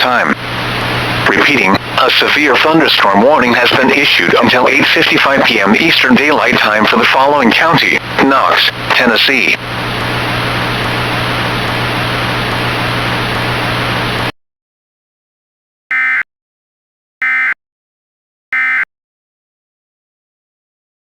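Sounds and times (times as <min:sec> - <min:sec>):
radio static hiss: 0:00.0 - 0:14.3.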